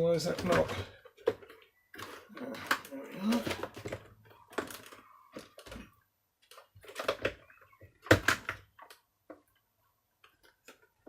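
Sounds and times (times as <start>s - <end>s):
plastic parts knocking and clicking: 0.0s - 9.6s.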